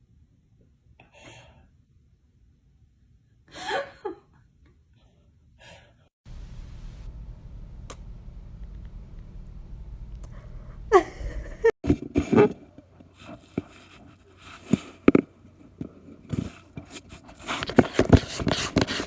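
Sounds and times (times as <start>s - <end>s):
steady low rumble: 6.2s - 11.8s.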